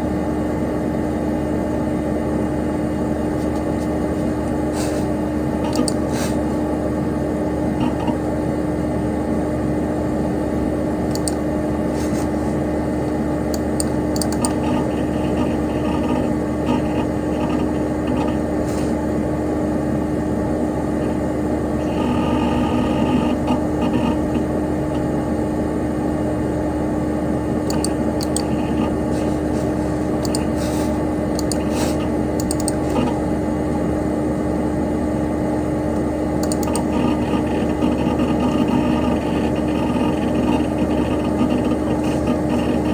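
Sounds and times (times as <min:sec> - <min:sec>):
computer fan whirring: 0:00.0 - 0:42.9
constant hum: 0:00.0 - 0:42.9
hard drive clicks: 0:05.6 - 0:06.1, 0:07.8 - 0:08.3, 0:11.1 - 0:11.5, 0:13.1 - 0:18.4, 0:27.6 - 0:30.7, 0:31.3 - 0:33.2, 0:36.4 - 0:42.9.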